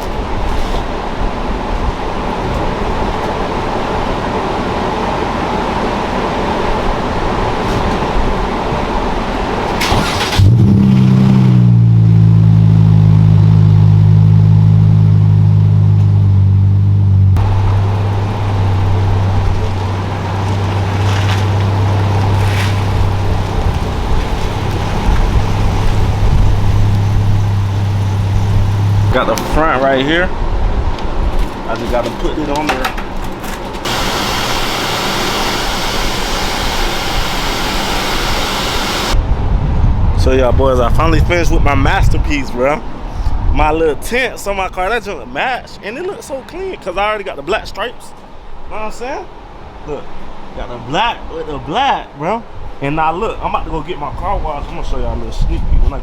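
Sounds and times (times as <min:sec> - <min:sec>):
car engine running: 0:09.5 - 0:29.6, 0:33.6 - 0:39.2
steady low hum: 0:11.9 - 0:29.8.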